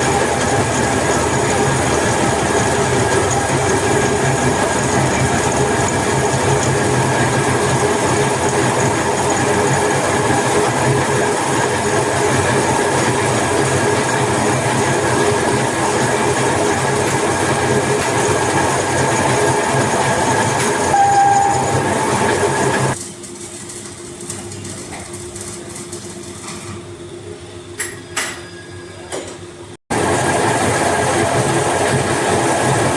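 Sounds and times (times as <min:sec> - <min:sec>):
high-pitched machine whine: 0:00.0 - 0:23.0
machine humming and hissing: 0:00.0 - 0:23.0, 0:29.9 - 0:32.9.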